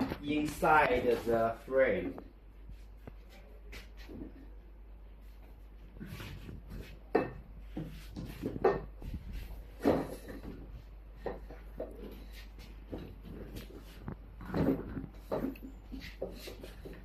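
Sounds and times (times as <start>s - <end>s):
knocks and rubbing of plastic parts: 5.9s - 17.0s.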